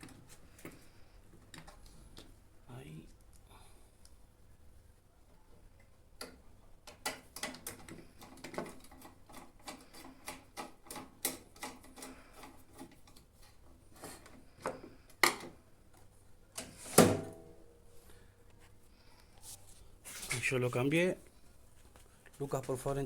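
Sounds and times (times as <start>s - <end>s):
hands clicking and tapping inside microwave: 6.2s - 13.3s.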